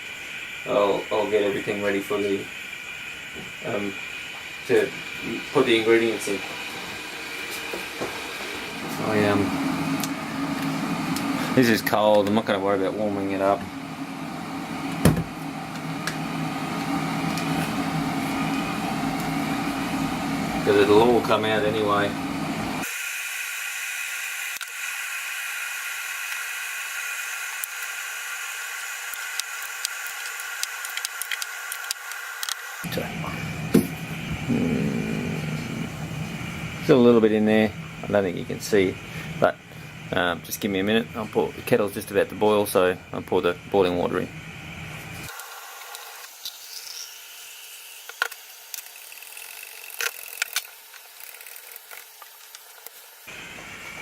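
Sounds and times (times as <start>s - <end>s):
liquid draining with hiss: 0.0s - 54.0s
foam clicks and pops: 28.8s - 32.6s.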